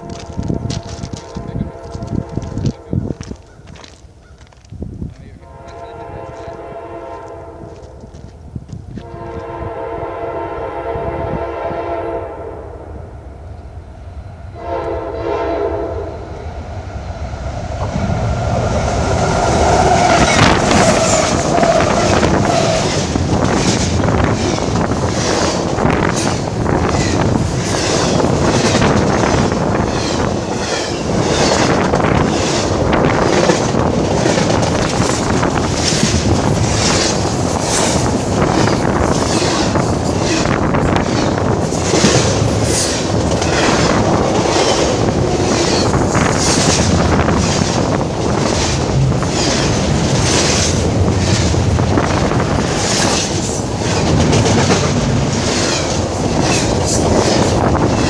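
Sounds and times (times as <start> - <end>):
diesel locomotive horn blasts: 0.0 - 3.1, 5.4 - 8.0, 9.0 - 12.8, 14.5 - 16.3
train wheels clacking over rail joints: 0.0 - 6.6, 19.8 - 58.0.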